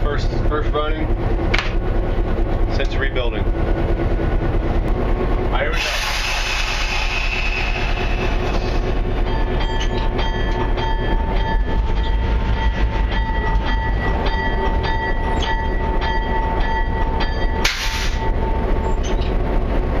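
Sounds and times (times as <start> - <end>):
locomotive diesel engine running: 0.0 - 20.0
locomotive bell ringing: 8.0 - 19.4.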